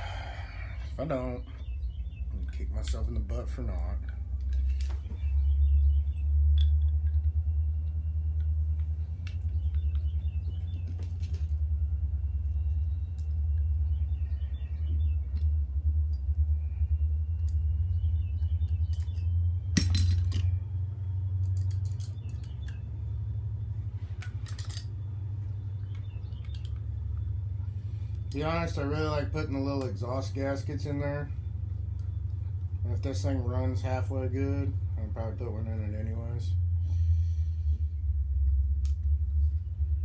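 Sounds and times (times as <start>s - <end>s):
steady low hum: 0.0s - 40.0s
metal parts clinking and rattling: 2.8s - 5.4s, 18.4s - 23.1s, 24.1s - 27.0s.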